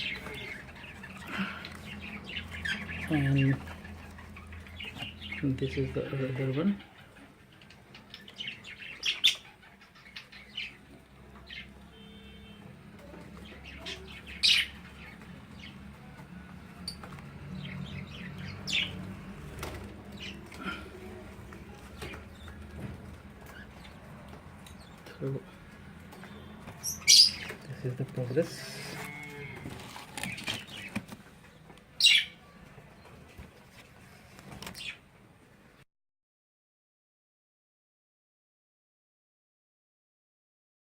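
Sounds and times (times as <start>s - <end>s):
cockatiels calling: 0.0s - 10.8s, 13.4s - 15.7s, 26.3s - 27.6s
pet birds chirping: 0.0s - 33.2s, 34.6s - 35.1s.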